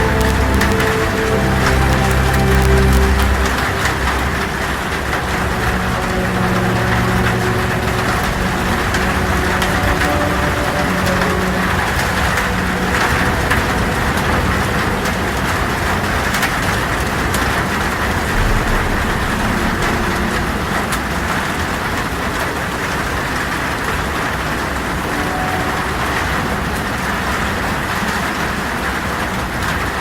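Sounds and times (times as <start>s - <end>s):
low rumble: 0.0s - 16.8s, 17.7s - 23.4s
heavy rain on a tin roof: 0.0s - 30.0s.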